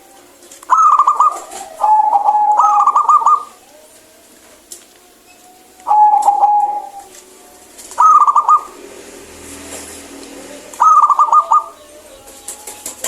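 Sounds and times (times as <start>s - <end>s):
dove cooing in rippling notes: 0.0s - 13.0s.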